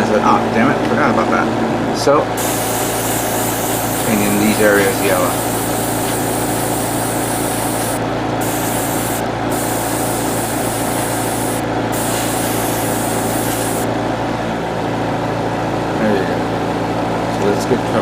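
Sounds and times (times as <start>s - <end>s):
air compressor humming: 2.3s - 14.3s
airbrush spraying hiss: 2.4s - 13.9s.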